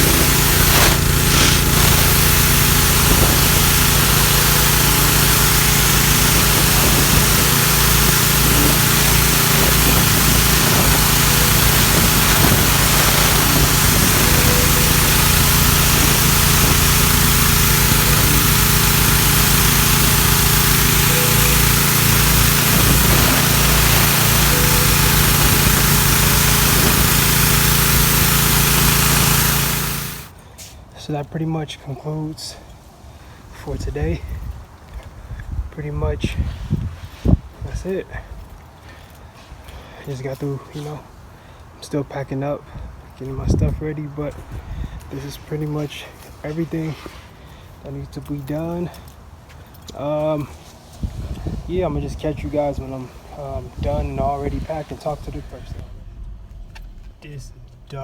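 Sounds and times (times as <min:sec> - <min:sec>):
high-pressure water jet hissing: 0:00.0 - 0:30.4, 0:50.1 - 0:57.4
pressure washer engine hum: 0:00.0 - 0:30.4, 0:50.1 - 0:58.0.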